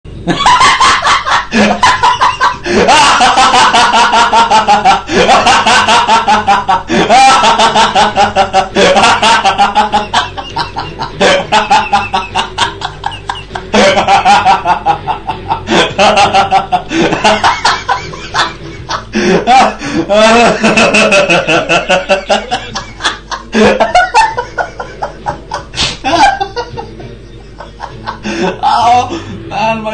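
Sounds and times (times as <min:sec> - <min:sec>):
man laughing uncontrollably: 0:00.3 - 0:29.3.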